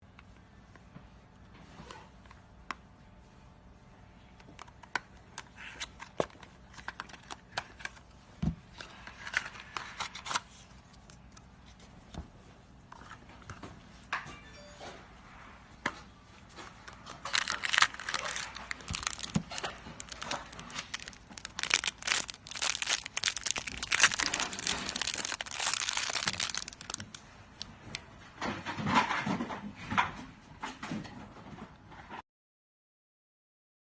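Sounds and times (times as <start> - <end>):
plastic packaging crinkling and tearing: 16.8 - 27.7.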